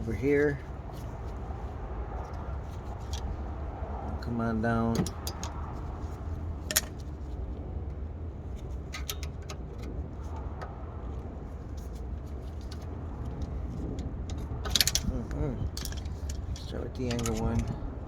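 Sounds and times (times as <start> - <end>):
parking brake cable clicks: 2.2 - 3.6, 4.7 - 18.0.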